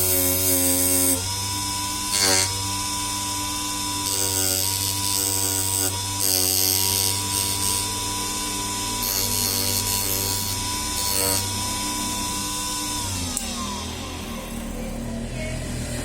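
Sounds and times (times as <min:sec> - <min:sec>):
electric motor whining: 0:00.0 - 0:16.0.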